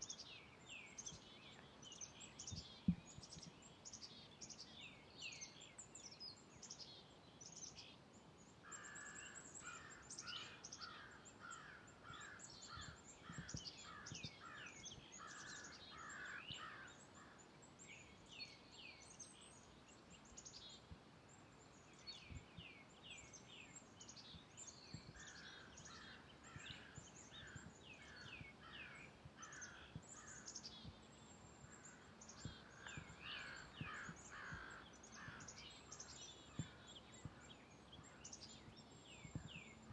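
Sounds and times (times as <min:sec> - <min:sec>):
lower repeated bird call: 0:08.7 - 0:17.4, 0:24.4 - 0:39.9
birds chirping: 0:08.7 - 0:39.9.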